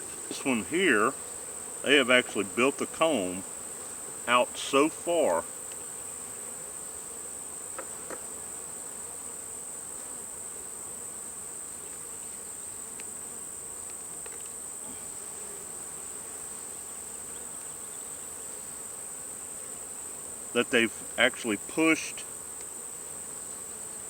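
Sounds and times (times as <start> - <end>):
bees buzzing: 0.0 - 13.8, 14.6 - 24.0
faint ticks: 5.6 - 5.9, 12.9 - 13.2, 13.8 - 14.6, 22.6 - 22.8.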